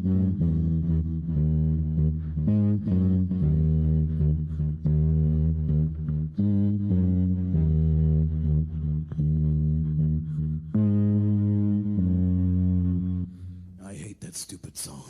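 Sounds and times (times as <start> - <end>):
vocal bass line with the mouth: 0.0 - 15.0.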